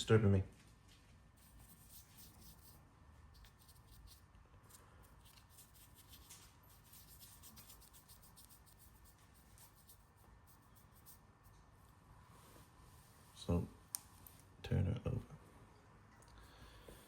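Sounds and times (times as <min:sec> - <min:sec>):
paintbrush scratching: 0:01.3 - 0:11.6.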